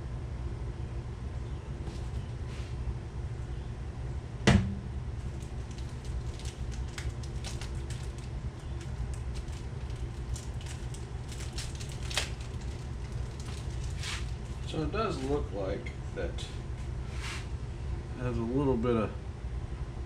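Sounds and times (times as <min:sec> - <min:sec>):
steady low hum: 0:00.0 - 0:20.0
sharp knock: 0:04.5 - 0:04.9.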